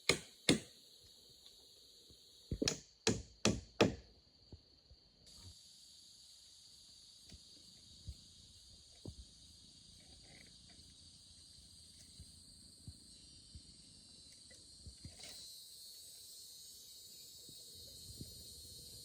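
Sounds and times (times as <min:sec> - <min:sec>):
high-pitched insect chorus: 0:00.1 - 0:19.0.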